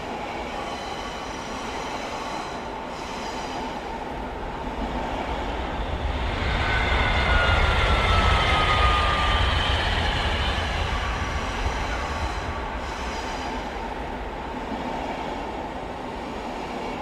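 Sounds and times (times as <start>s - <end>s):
high-speed train passing: 0.0s - 17.0s
high whine sliding down: 5.2s - 13.8s.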